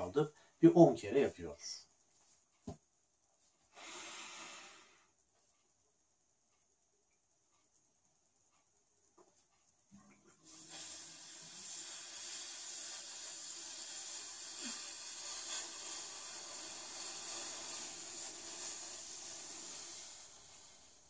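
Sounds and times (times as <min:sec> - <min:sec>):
person blowing out breath: 0:03.7 - 0:05.1, 0:10.7 - 0:21.0.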